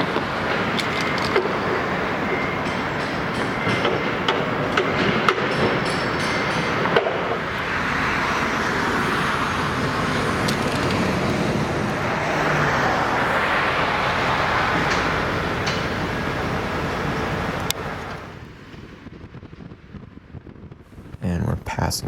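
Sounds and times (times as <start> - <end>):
car road noise: 0.0 - 21.9.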